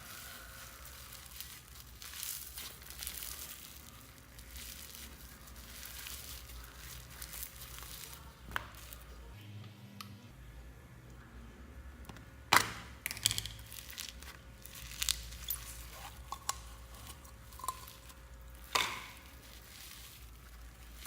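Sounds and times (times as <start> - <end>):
slime squished by hand: 0.0 - 9.3, 12.7 - 21.0.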